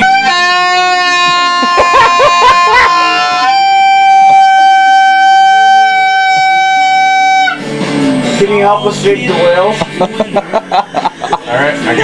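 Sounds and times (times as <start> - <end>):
loud buzzy tone: 0.0 - 8.4.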